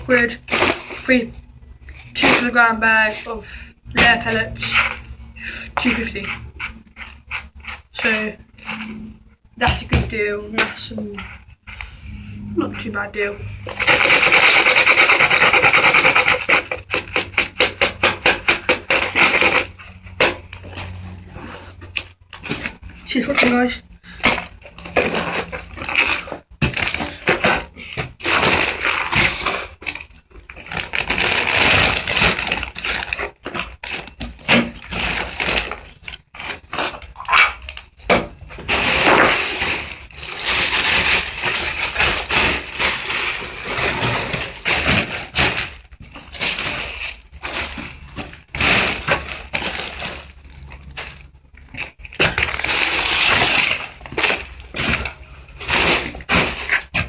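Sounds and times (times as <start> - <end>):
crunching and rustling: 13.5 - 57.0.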